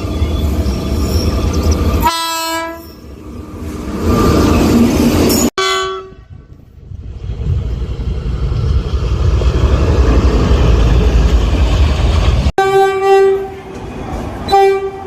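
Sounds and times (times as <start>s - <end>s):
train rumble: 0.0s - 15.0s
train horn blast: 2.0s - 3.0s, 5.6s - 6.6s, 12.6s - 13.8s, 14.4s - 15.0s.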